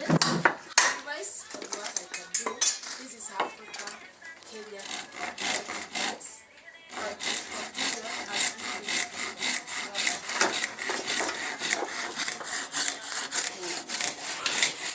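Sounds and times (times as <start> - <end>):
hand saw cutting wood: 4.5 - 14.9.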